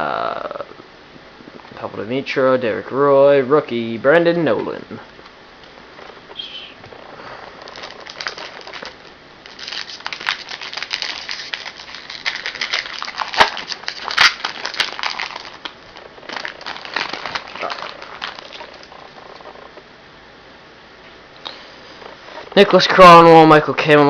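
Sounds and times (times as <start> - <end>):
wrapper crinkling and crackling: 7.5 - 19.5.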